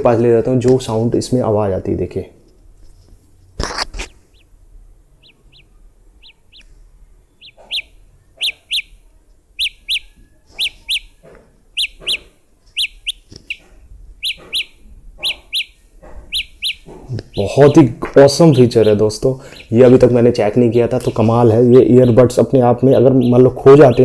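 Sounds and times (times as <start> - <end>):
earbud alert chirps: 7.3 - 17.8.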